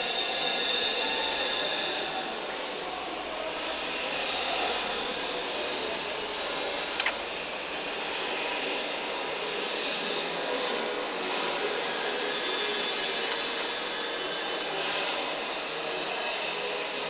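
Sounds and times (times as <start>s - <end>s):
sharp click: 7.0s - 7.2s.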